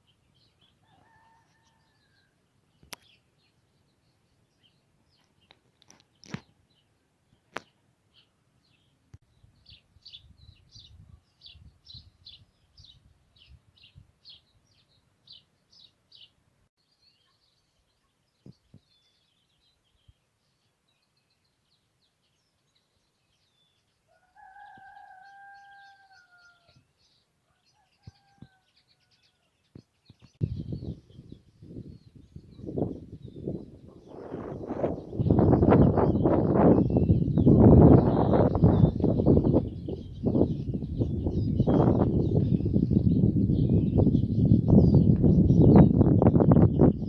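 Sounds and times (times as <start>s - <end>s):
distant rooster crowing: 0.8s - 2.4s, 24.1s - 26.8s, 27.5s - 29.5s.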